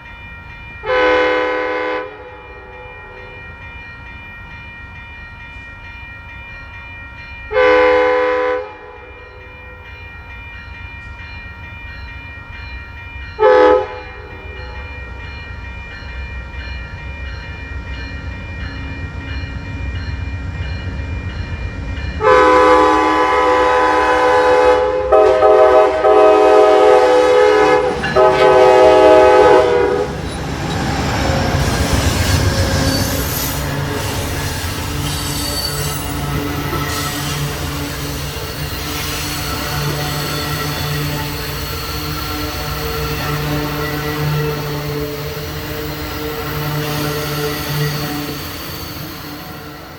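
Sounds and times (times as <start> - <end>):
train air horn blasts: 0.8 - 2.9, 7.5 - 9.0, 13.4 - 14.2, 22.2 - 30.2
wheels rushing on rail: 13.2 - 49.9
train rumble: 13.3 - 49.9.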